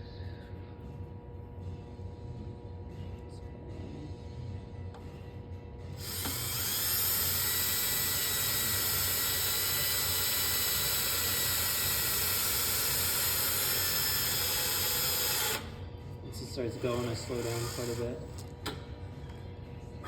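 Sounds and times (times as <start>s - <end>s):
cordless drill whining: 6.0s - 15.8s, 16.7s - 18.5s.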